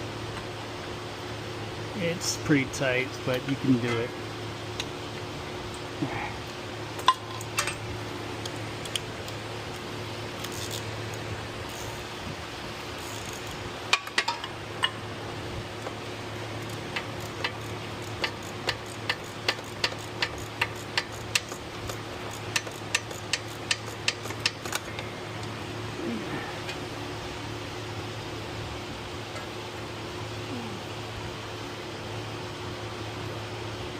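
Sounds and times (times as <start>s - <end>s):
ratchet clicking: 10.4s - 12.0s, 13.0s - 15.0s, 16.6s - 24.9s.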